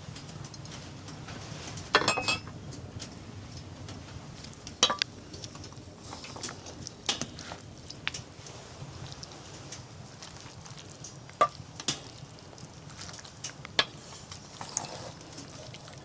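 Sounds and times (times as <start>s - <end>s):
metal cookware clinking: 2.0s - 2.5s, 4.8s - 5.0s.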